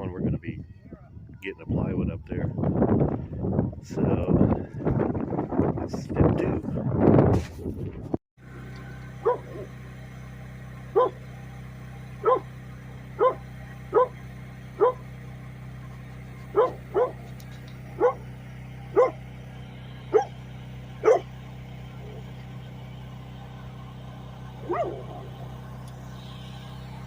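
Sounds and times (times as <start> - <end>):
steady low hum: 8.4 - 27.0
dog barking: 9.2 - 9.7, 11.0 - 11.2, 12.2 - 12.5, 13.2 - 14.2, 14.8 - 15.0, 16.5 - 17.2, 18.0 - 18.2, 18.9 - 19.2, 20.1 - 20.4, 21.0 - 21.3, 24.6 - 25.3.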